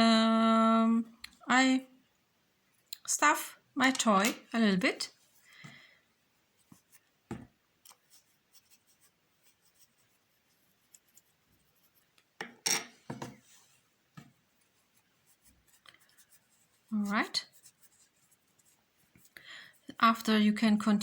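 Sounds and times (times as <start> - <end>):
soft rustling of stuffing: 4.0 - 12.4, 13.0 - 20.8.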